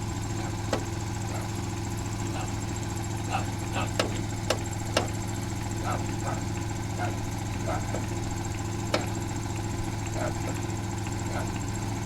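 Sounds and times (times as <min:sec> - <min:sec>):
air compressor humming: 0:00.0 - 0:12.0
dog barking: 0:00.4 - 0:01.6, 0:02.3 - 0:02.6, 0:05.8 - 0:08.2, 0:10.1 - 0:10.6, 0:11.2 - 0:11.6.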